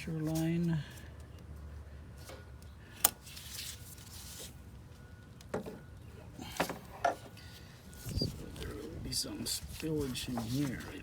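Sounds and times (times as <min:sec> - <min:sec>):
faint rustle: 0:07.3 - 0:11.0.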